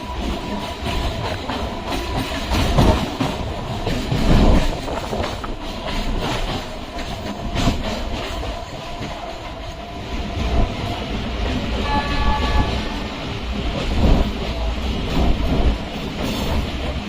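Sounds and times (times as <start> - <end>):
electric train rumbling on track: 0.0 - 17.0
wheels clacking over rail joints: 0.0 - 17.0.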